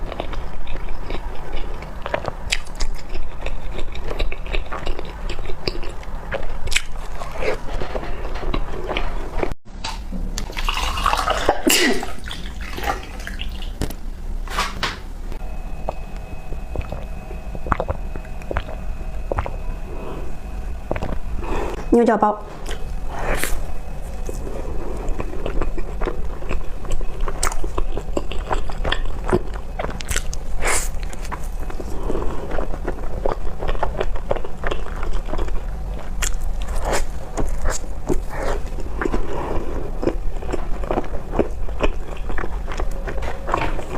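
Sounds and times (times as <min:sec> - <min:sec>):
wet chewing: 0:00.0 - 0:09.6, 0:15.8 - 0:21.8, 0:22.6 - 0:43.9.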